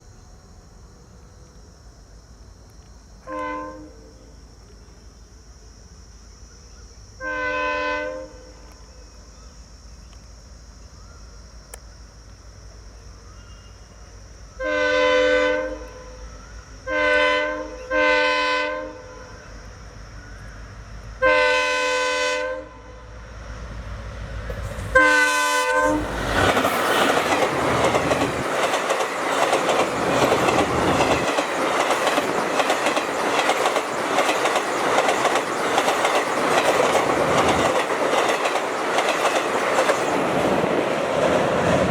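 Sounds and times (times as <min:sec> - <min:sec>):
locomotive horn blasts: 0:03.3 - 0:04.1, 0:07.2 - 0:08.5, 0:14.6 - 0:16.1, 0:16.9 - 0:19.2, 0:21.2 - 0:23.0, 0:24.9 - 0:26.2
train wheels clattering on rails: 0:26.0 - 0:41.9.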